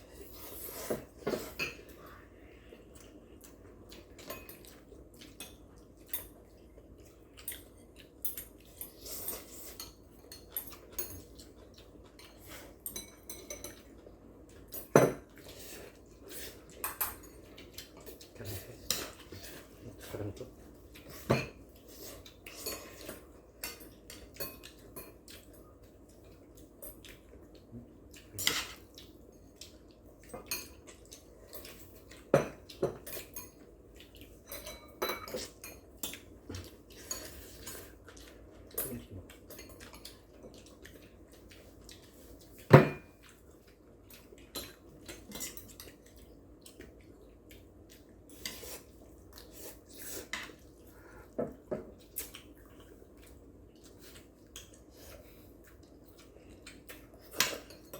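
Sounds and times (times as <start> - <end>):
utensils clinking on bowls: 34.4 - 36.2.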